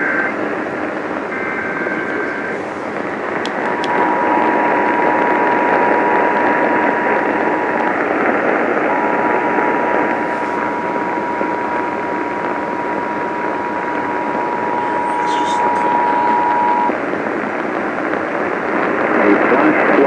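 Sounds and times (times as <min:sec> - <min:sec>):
radio static hiss: 0:00.0 - 0:20.0
two-tone alert signal: 0:10.2 - 0:16.9.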